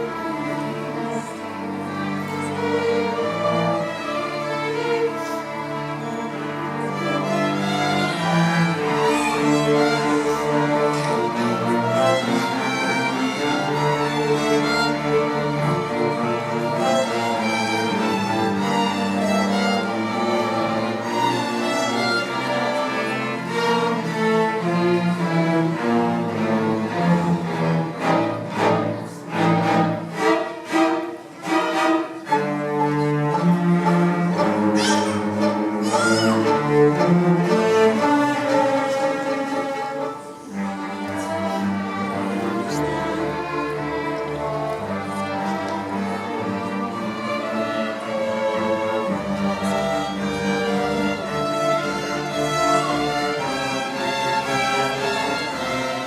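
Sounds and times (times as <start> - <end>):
string orchestra bowed chords: 0.0 - 56.0.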